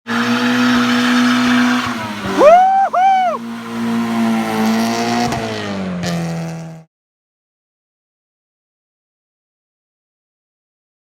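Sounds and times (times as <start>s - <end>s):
car engine revving high: 0.1s - 6.9s
tire squeals: 0.2s - 6.4s.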